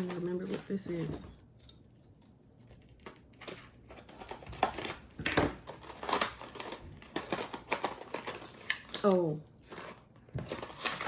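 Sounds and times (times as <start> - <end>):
packaging rustling: 5.6 - 8.9, 9.6 - 11.0.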